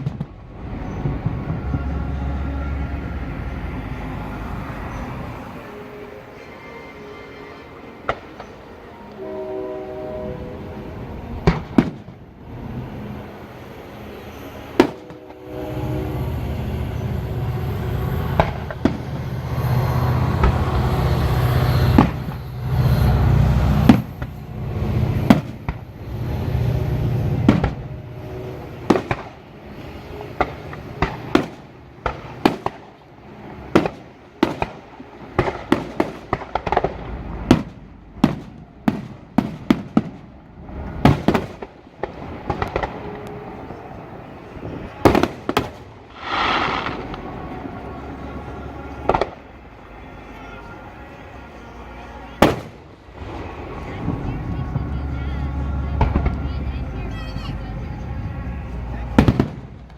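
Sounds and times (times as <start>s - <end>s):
fireworks bangs and booms: 0.0s - 2.4s, 11.3s - 12.7s, 14.7s - 15.1s, 18.3s - 19.7s, 21.8s - 22.5s, 23.7s - 27.9s, 28.6s - 43.8s, 44.4s - 48.2s, 49.0s - 49.5s, 52.4s - 55.2s, 55.9s - 56.8s, 59.0s - 59.9s
heavy rolling rumble: 0.0s - 6.2s, 8.0s - 59.9s.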